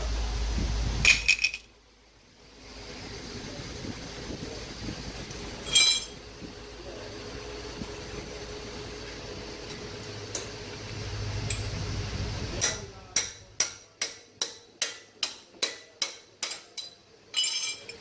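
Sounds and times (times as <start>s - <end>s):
metal tools tapping brake parts: 5.7s - 6.2s, 12.6s - 18.0s.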